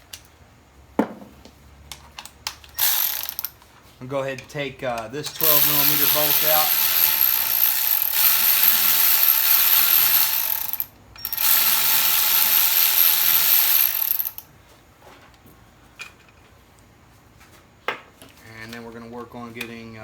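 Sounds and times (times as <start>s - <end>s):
ratchet wrench ratcheting: 2.7s - 3.6s, 5.2s - 14.4s.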